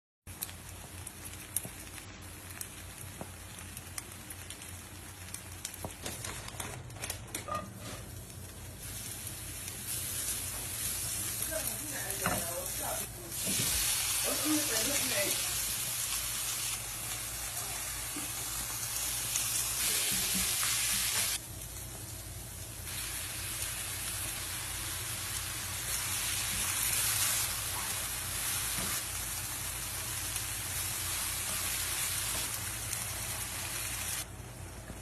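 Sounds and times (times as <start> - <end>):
food sizzling in oil: 7.5 - 34.8.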